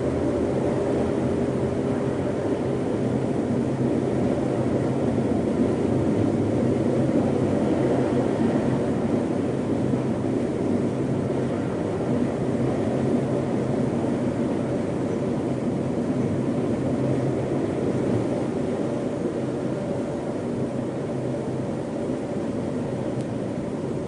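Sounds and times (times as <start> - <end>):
strong storm wind rushing: 0.0 - 24.0.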